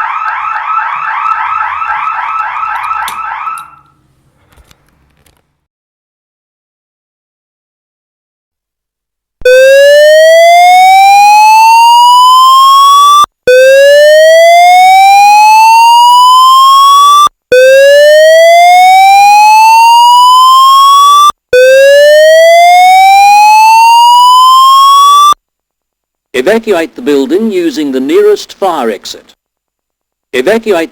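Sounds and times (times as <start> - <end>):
fire alarm rising whoop tone: 0.0 - 3.9, 9.4 - 25.4.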